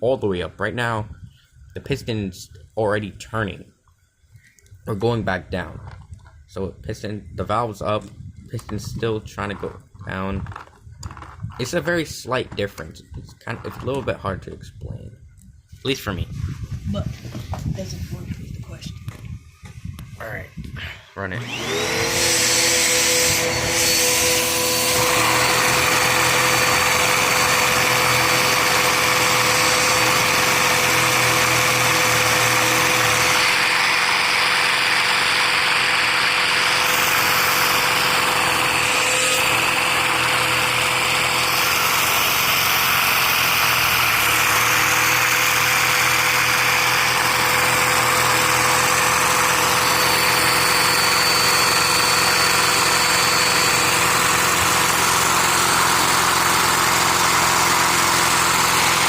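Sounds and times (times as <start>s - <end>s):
vacuum cleaner whine and air rush: 21.2s - 59.0s.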